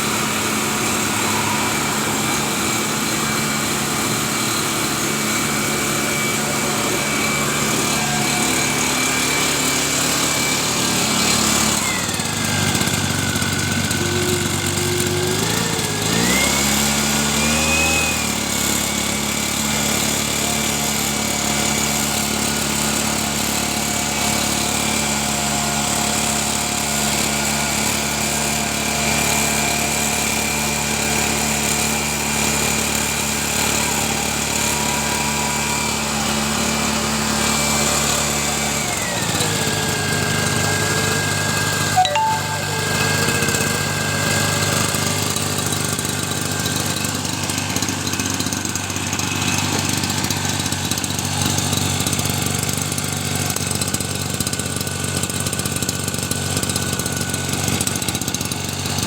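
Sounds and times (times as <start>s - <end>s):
mist blower engine running: 0.0s - 33.4s.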